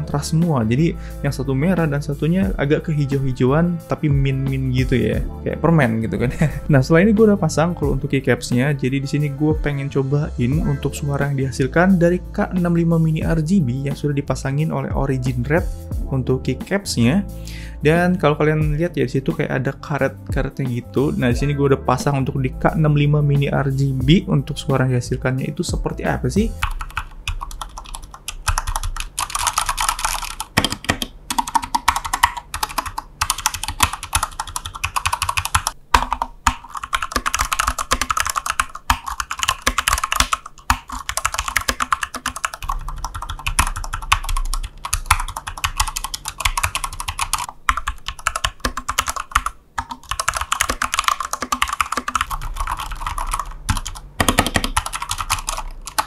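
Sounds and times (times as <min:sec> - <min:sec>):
mechanical keyboard typing: 0:26.6 - 0:56.0.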